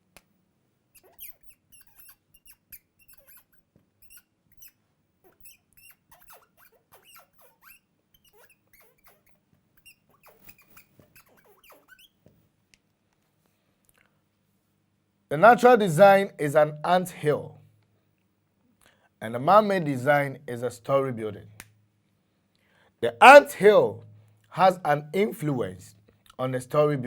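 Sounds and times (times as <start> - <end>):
small animal squeaking and chirping: 0.9 - 12.3.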